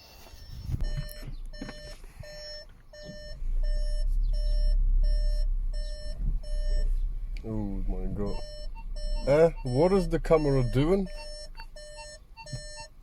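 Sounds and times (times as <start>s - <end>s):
parking sensor beeps: 0.0s - 13.0s
low rumble: 0.4s - 12.8s.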